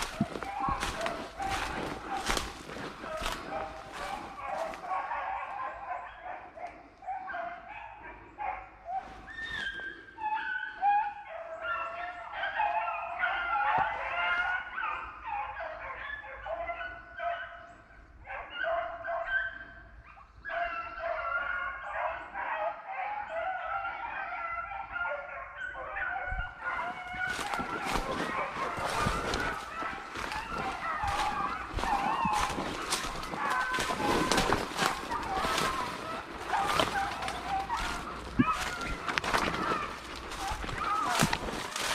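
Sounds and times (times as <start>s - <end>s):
hounds baying and yipping: 0.0s - 41.9s.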